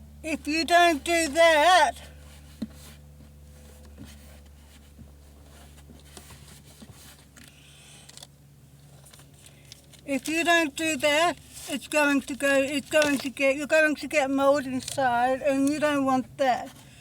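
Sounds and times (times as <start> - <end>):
steady low hum: 0.0 - 17.0
cloth rubbing on plastic tub: 1.4 - 7.3.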